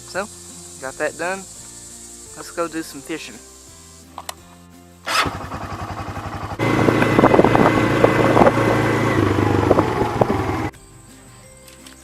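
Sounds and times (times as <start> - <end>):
small engine running: 5.1 - 10.7.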